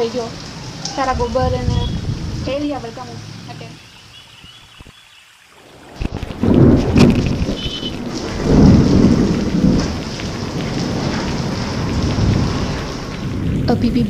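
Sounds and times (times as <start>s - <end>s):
heavy rain pouring: 0.0s - 14.0s
rolling thunder: 0.9s - 3.0s, 5.9s - 14.0s.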